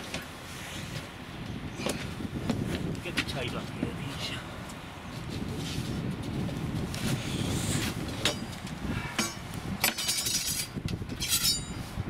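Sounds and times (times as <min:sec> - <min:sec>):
wind rumble on microphone: 0:00.0 - 0:12.0
rattling clatters: 0:08.1 - 0:11.7.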